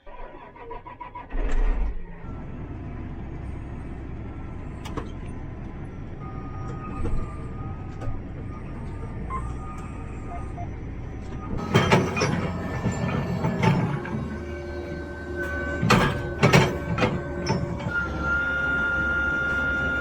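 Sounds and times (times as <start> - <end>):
tractor engine running: 2.3 - 18.9.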